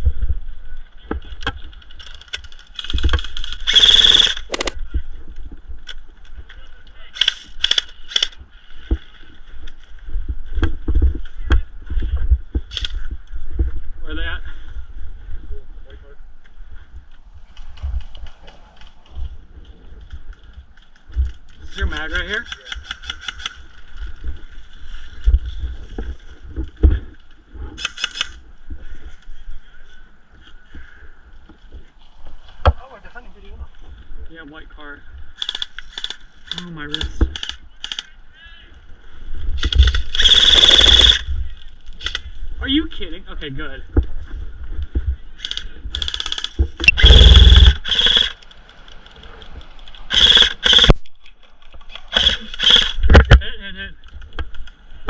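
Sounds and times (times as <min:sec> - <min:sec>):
airsoft rifle burst: 0:03.6 - 0:04.8, 0:39.8 - 0:41.2, 0:46.0 - 0:48.4, 0:50.1 - 0:51.0, 0:52.1 - 0:53.2.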